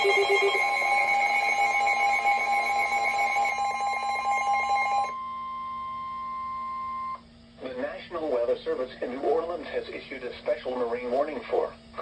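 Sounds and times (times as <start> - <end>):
pulsing electronic alarm beeping: 0.0 - 7.2
steady warning tone: 0.0 - 7.2.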